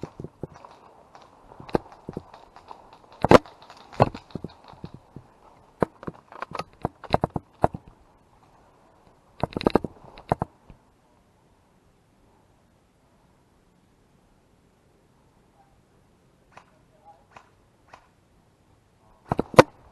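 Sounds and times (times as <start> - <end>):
footsteps crunching dry leaves: 0.0 - 5.2.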